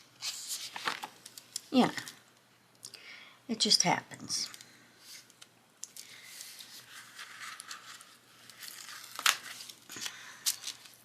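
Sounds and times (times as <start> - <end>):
paper rustling and crinkling: 0.2 - 1.4, 6.1 - 11.0
sharp paper crackles: 6.7 - 11.0.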